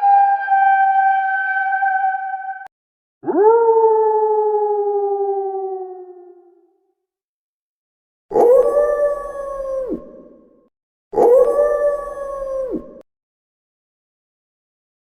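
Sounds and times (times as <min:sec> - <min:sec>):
wolf howling: 0:00.0 - 0:06.6, 0:08.3 - 0:10.0, 0:11.2 - 0:12.9.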